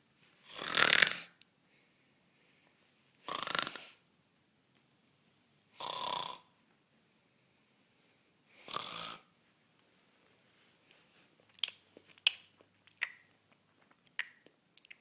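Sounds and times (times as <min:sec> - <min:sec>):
person snoring: 0:00.5 - 0:01.3, 0:03.3 - 0:04.0, 0:05.8 - 0:06.5, 0:08.6 - 0:09.3.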